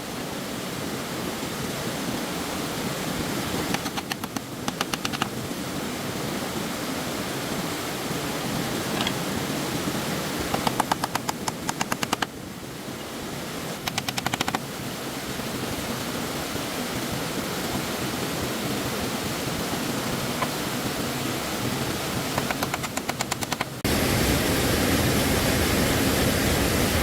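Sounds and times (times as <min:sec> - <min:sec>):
stream water rushing: 0:00.0 - 0:27.0
fast rattle of sharp ticks: 0:03.7 - 0:05.4, 0:10.5 - 0:12.3, 0:13.8 - 0:14.7, 0:22.4 - 0:23.8.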